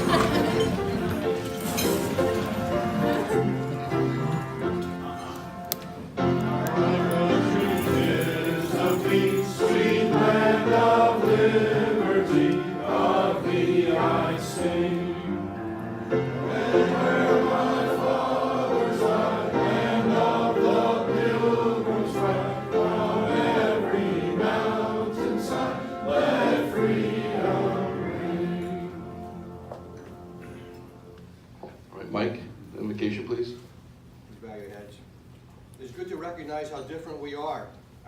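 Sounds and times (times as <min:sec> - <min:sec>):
musical accompaniment: 0:00.0 - 0:31.4
group of voices singing: 0:06.4 - 0:29.4.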